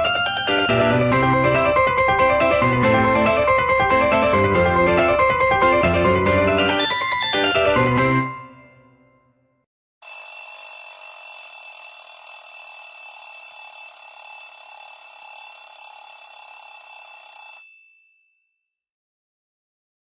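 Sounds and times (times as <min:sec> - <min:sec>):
held high phone tones: 0:10.0 - 0:18.1.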